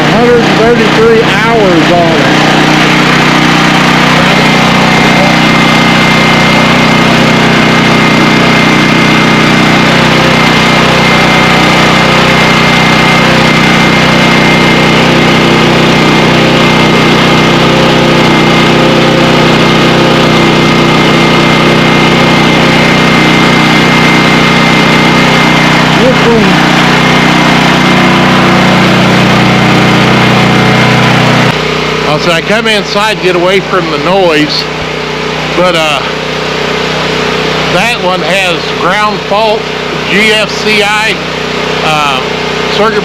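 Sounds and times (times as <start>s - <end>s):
portable generator engine running: 0.0s - 43.0s.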